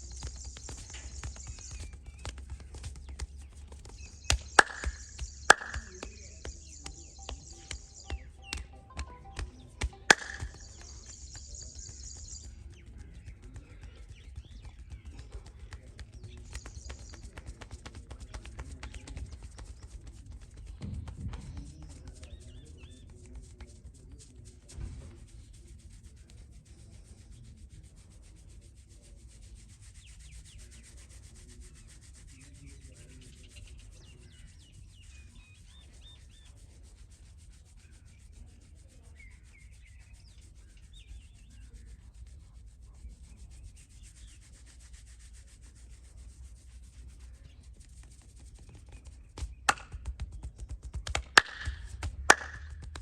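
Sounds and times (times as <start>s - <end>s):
hands rubbing skin and hair: 0.0s - 53.0s
hands smacking the body: 0.2s - 11.2s, 49.4s - 53.0s.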